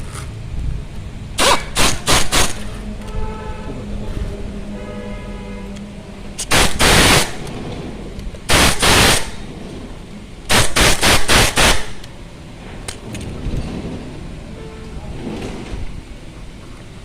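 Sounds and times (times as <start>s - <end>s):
power tool harsh bursts: 6.5s - 7.4s, 8.5s - 9.4s, 10.5s - 12.0s.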